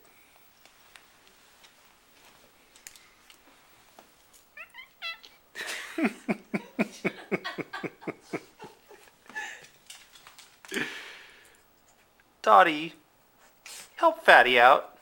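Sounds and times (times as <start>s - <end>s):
cat chirp: 4.6s - 5.3s
cat crying: 4.6s - 5.3s.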